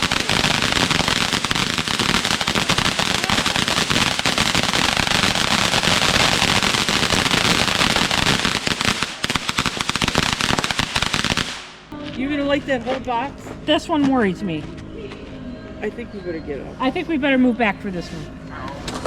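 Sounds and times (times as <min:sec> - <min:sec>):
ground firework crackling: 0:00.0 - 0:12.4.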